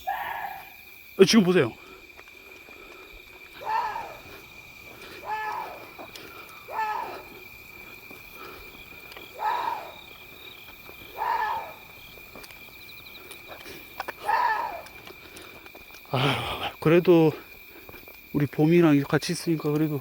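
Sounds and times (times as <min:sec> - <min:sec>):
high insect drone: 0:00.0 - 0:20.0
deer hoarse scream-like calls: 0:03.5 - 0:10.3, 0:10.9 - 0:12.0, 0:14.0 - 0:15.1.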